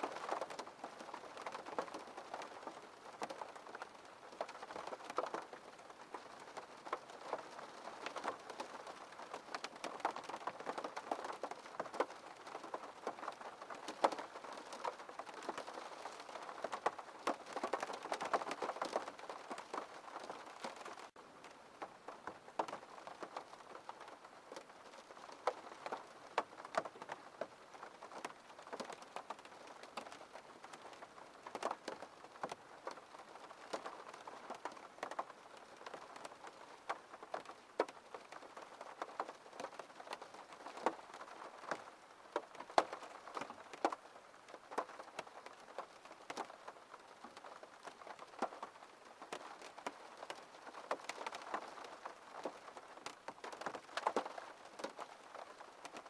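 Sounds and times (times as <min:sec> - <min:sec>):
rain on a window pane: 0:00.0 - 0:56.0.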